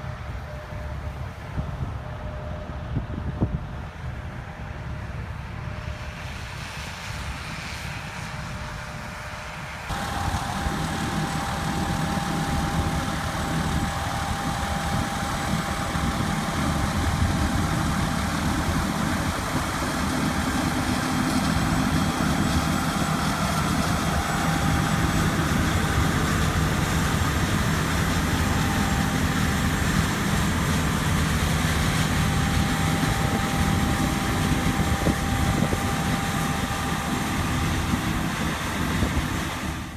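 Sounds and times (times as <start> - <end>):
combine harvester engine drone: 0.0 - 39.9.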